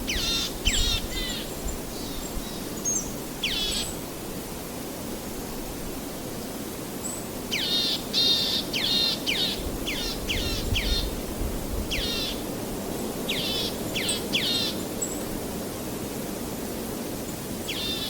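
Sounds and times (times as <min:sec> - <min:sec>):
songbird calling: 0:00.0 - 0:04.0, 0:07.1 - 0:11.2, 0:11.9 - 0:12.4, 0:13.3 - 0:15.2, 0:17.6 - 0:18.0.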